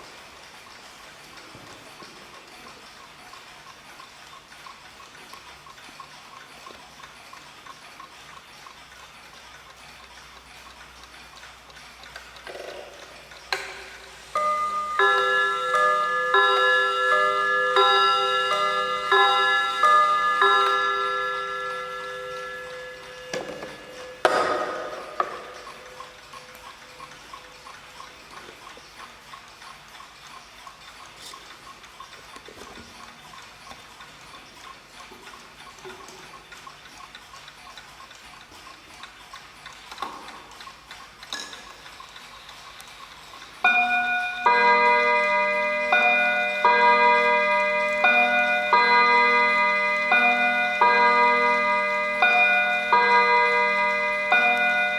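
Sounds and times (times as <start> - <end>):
clock ticking: 0.0 - 54.9
clock chime ringing: 13.6 - 27.5, 43.6 - 54.9
chime tune: 14.3 - 26.6, 43.7 - 54.9
sharp knocks: 23.3 - 25.7.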